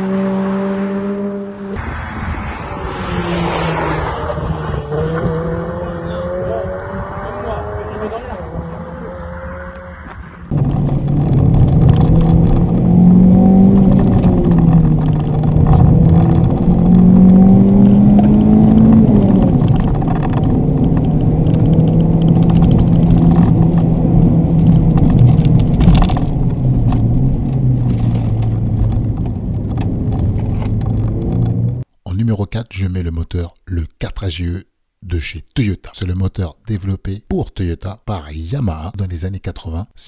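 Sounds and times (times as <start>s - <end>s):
car engine revving: 0.0s - 31.8s.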